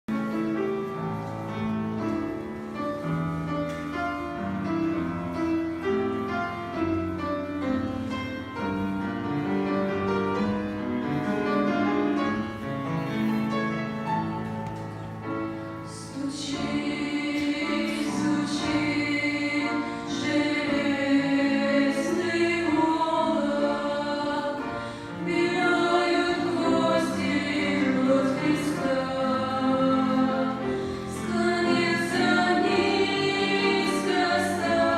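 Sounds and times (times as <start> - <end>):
choir singing a hymn: 15.8 - 34.9.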